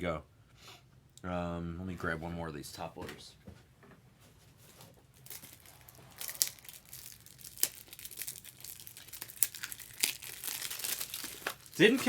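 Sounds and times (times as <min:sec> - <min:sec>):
plastic packaging crinkling: 0:05.1 - 0:12.0.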